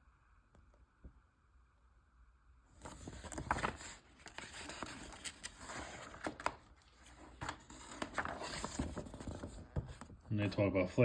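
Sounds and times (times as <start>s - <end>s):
paper pages rustling: 2.7s - 10.3s.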